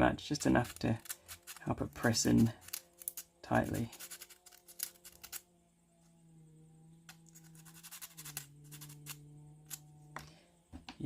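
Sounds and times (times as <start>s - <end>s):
faint low hum: 0.0s - 11.0s
sandpaper scratching wood: 0.4s - 5.4s, 7.3s - 9.2s.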